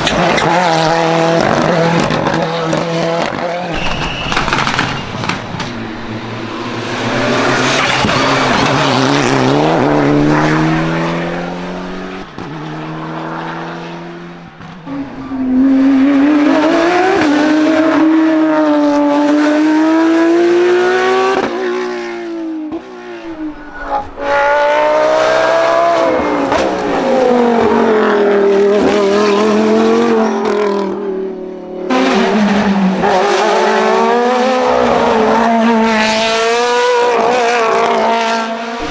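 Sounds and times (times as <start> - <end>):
tyre squeal: 0.0 - 1.3, 3.8 - 16.0, 23.3 - 27.3
racing car engines revving: 0.0 - 38.9.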